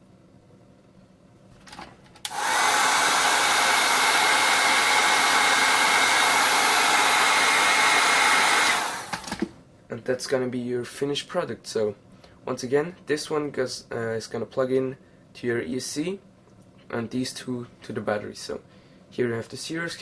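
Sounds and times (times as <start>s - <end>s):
hot-air blower whining: 2.2s - 9.6s.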